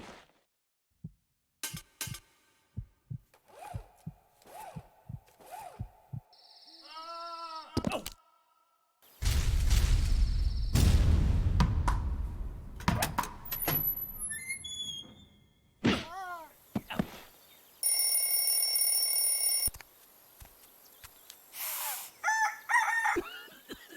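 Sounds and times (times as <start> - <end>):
steady ringing tone: 17.8 - 19.7.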